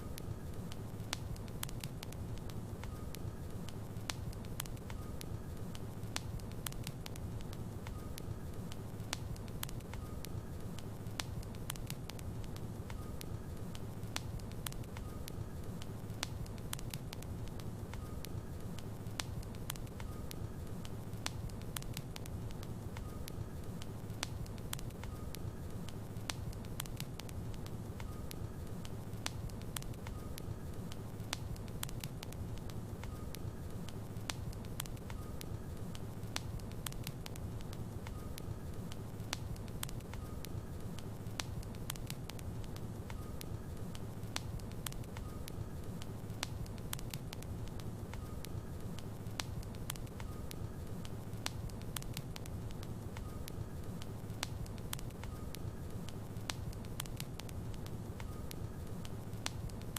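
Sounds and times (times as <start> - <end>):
fire crackling and popping: 0.0 - 59.9
low rumble of flames: 0.0 - 59.9.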